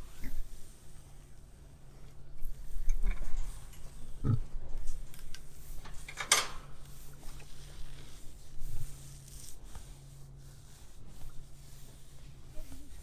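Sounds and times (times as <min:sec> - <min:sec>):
hands rubbing bristly hair: 0:05.0 - 0:13.0.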